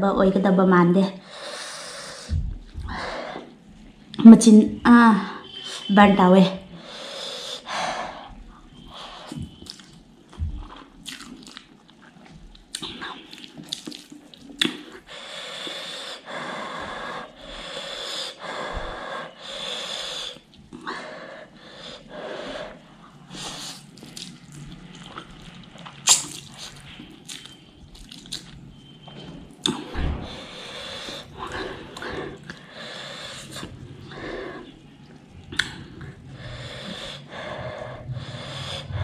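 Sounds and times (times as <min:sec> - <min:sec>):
hissing breaths: 0:01.2 - 0:03.8, 0:06.7 - 0:09.6, 0:15.0 - 0:24.0, 0:29.7 - 0:39.0
mouth chewing sounds: 0:08.5 - 0:15.1, 0:22.9 - 0:29.9, 0:30.8 - 0:37.2.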